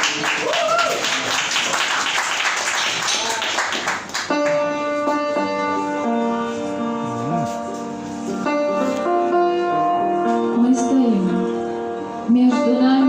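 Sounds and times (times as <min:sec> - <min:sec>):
slow instrumental music with held chords: 0:04.3 - 0:13.0.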